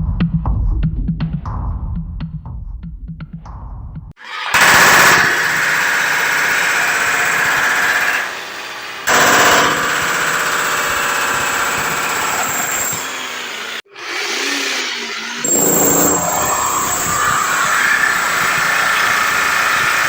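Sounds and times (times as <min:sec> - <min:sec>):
electric demolition hammer hammering: 0:04.2 - 0:20.0.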